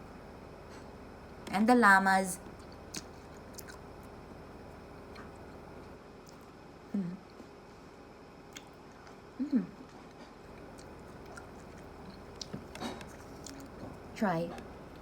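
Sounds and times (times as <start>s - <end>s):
chewing chocolate: 2.6s - 4.1s, 8.5s - 9.2s, 9.8s - 14.0s.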